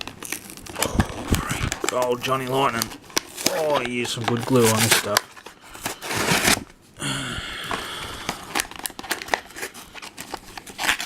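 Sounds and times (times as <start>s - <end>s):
plastic crinkling and crackling: 0.0s - 6.7s, 8.2s - 11.0s.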